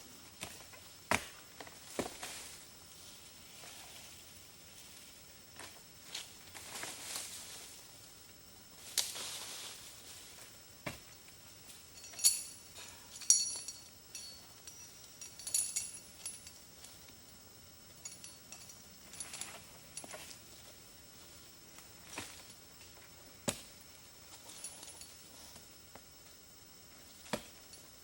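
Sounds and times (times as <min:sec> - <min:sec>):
soft brushing and rustling: 0:08.8 - 0:10.5
metal gear clinking: 0:12.0 - 0:16.6, 0:18.0 - 0:20.2.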